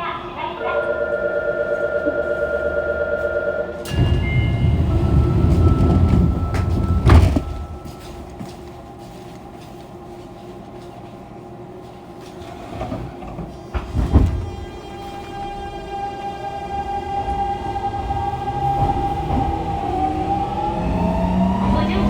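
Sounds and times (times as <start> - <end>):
train inverter whine: 0.0 - 22.0
train doors rumbling shut: 3.8 - 8.7, 12.2 - 22.0.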